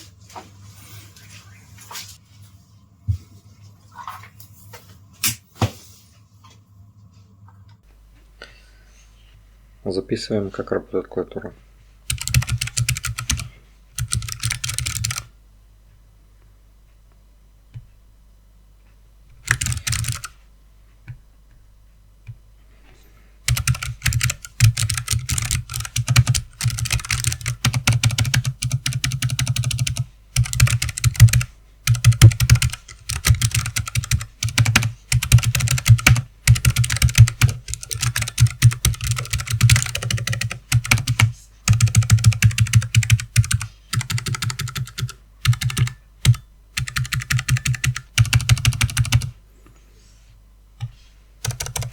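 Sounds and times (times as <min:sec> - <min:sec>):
mechanical keyboard clicking: 0:12.1 - 0:15.3, 0:19.4 - 0:20.3, 0:23.5 - 0:49.3, 0:51.5 - 0:51.9.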